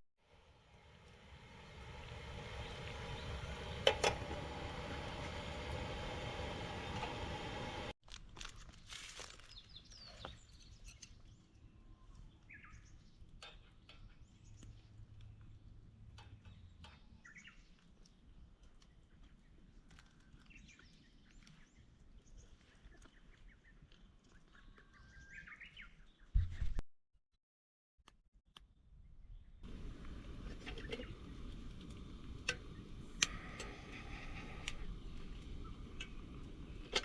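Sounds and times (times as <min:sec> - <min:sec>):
quiet outdoor ambience: 0:00.2 - 0:26.4, 0:28.6 - 0:37.0
small birds chirping: 0:01.6 - 0:04.0, 0:09.4 - 0:26.7, 0:32.6 - 0:36.8.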